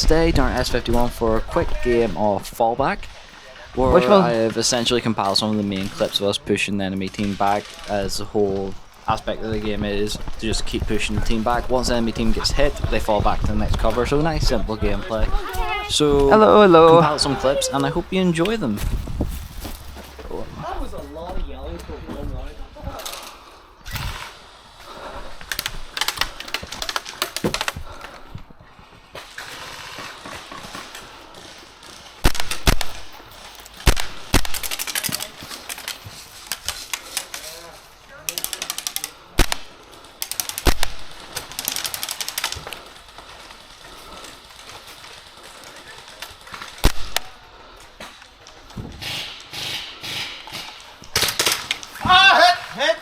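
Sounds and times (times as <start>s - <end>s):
muffled rustling: 0.0s - 49.0s
airsoft guns firing: 3.0s - 18.8s, 29.2s - 47.5s, 49.0s - 52.8s
airsoft gun shots: 32.2s - 33.1s, 33.8s - 35.2s, 39.4s - 39.7s, 40.5s - 41.2s.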